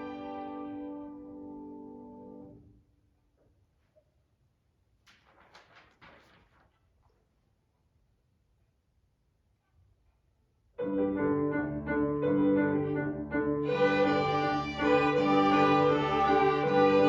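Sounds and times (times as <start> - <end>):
children's violin ensemble playing: 0.0 - 0.9, 13.6 - 17.0.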